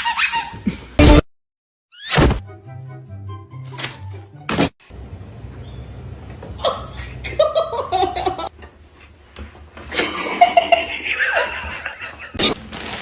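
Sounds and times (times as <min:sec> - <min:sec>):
person laughing: 0:06.6 - 0:08.5.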